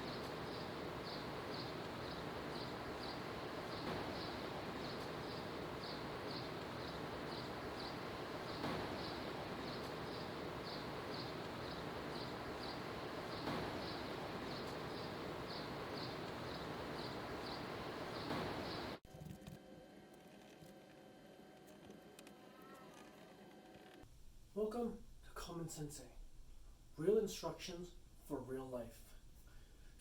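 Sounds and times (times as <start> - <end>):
insect chirping: 0.0 - 19.0
steady background hiss: 0.0 - 19.0, 24.0 - 30.0.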